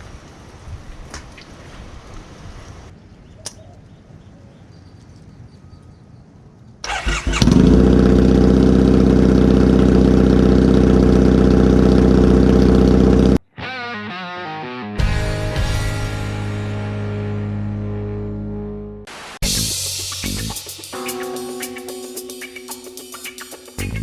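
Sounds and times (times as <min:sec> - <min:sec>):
motorcycle engine cranking on starter: 0:06.8 - 0:09.3
loud engine idle: 0:07.4 - 0:13.4.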